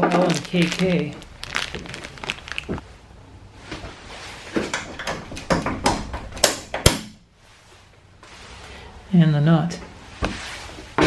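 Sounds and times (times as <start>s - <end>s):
plastic parts clicking and knocking: 4.6s - 7.1s.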